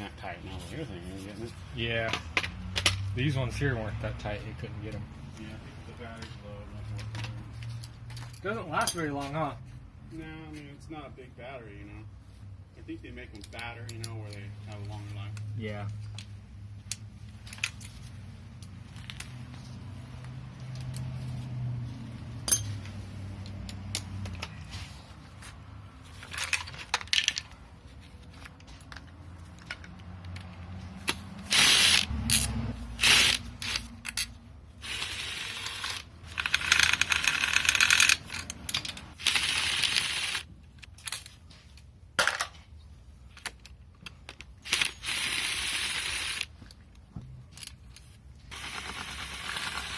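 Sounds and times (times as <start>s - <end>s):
metal tools clinking: 22.4s - 24.8s
power tool bursts: 31.5s - 33.8s, 34.8s - 38.2s, 39.2s - 40.4s, 44.6s - 46.5s, 48.5s - 49.9s
ratchet clicks: 34.9s - 40.4s, 48.5s - 49.9s.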